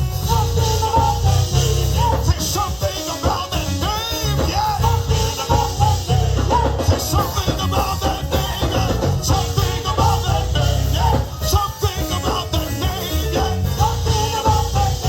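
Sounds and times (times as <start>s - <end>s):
bass line: 0.0s - 15.0s
drums: 0.0s - 15.0s
organ playing quick runs: 0.0s - 15.0s.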